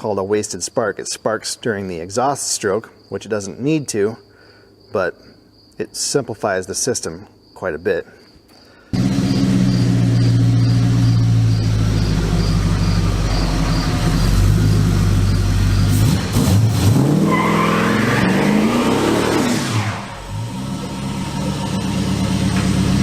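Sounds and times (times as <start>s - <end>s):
car engine revving and idling: 9.0s - 23.0s.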